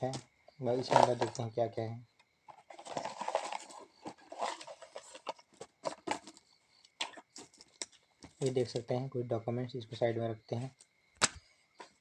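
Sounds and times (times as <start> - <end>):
packet rustling and crinkling: 0.8 - 1.4, 2.5 - 6.4.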